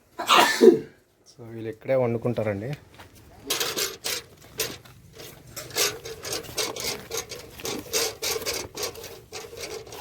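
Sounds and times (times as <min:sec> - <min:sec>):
feed being stirred and scraped: 0:03.4 - 0:10.0.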